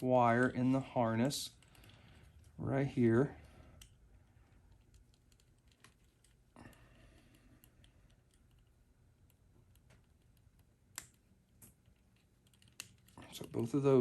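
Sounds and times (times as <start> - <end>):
connectors clicking together: 7.6 - 13.7.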